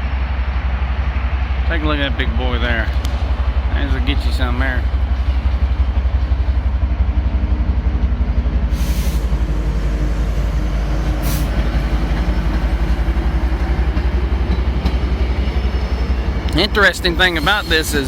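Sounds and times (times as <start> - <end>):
train rumbling past: 0.0 - 18.0
short hisses: 8.7 - 9.5, 11.2 - 11.7.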